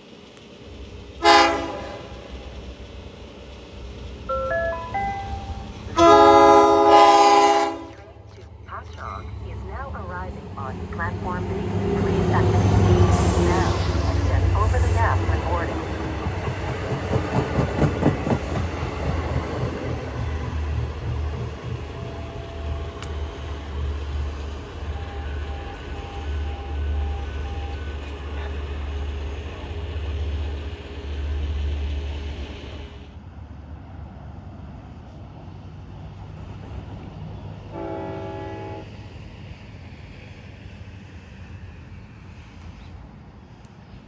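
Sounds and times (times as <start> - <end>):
train rumbling past: 0.0 - 44.0
train horn blast: 1.2 - 2.2, 5.9 - 8.4, 10.4 - 15.8, 37.7 - 39.0.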